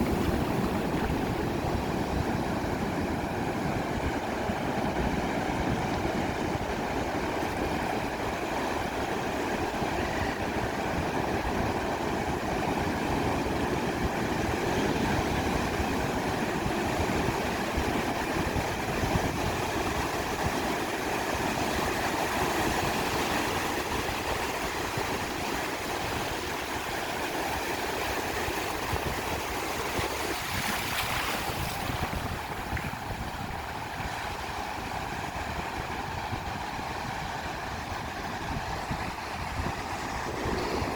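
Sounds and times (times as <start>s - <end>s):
ocean surf washing onto beach: 0.0s - 40.9s
wave breaking: 29.3s - 33.3s, 38.7s - 40.9s.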